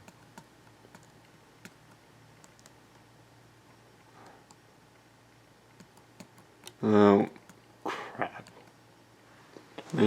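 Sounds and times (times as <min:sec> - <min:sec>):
laptop keys clicking: 0:00.0 - 0:02.8, 0:05.7 - 0:06.8.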